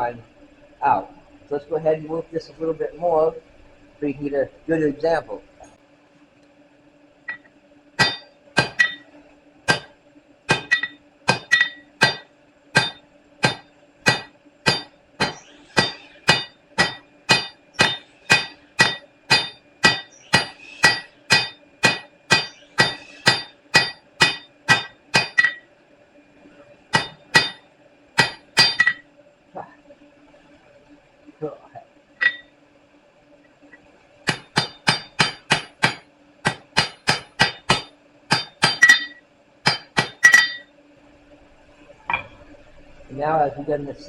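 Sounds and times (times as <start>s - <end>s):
hammer striking metal on anvil: 8.0s - 9.0s, 9.7s - 9.9s, 10.5s - 25.6s, 26.9s - 27.6s, 28.2s - 29.0s, 32.2s - 32.5s, 34.3s - 40.7s.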